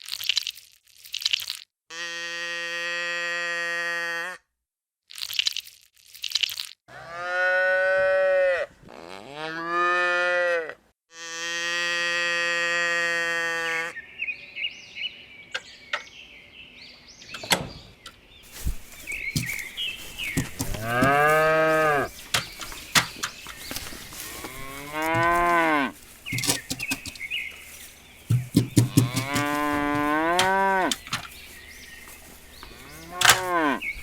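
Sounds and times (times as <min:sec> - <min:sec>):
sharp clicks: 0:19.3 - 0:21.3, 0:22.0 - 0:25.3, 0:26.3 - 0:27.3, 0:28.3 - 0:31.4, 0:32.1 - 0:33.7
cattle mooing: 0:20.4 - 0:22.8, 0:24.1 - 0:26.0, 0:28.8 - 0:31.3, 0:32.6 - 0:33.9.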